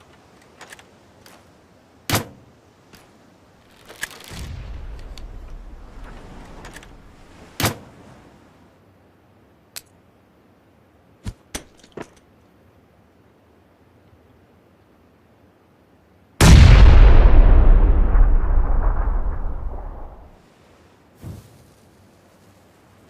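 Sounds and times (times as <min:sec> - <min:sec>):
low rumble: 0:04.4 - 0:07.4, 0:16.4 - 0:20.4
quiet sharp clicks: 0:09.7 - 0:10.0.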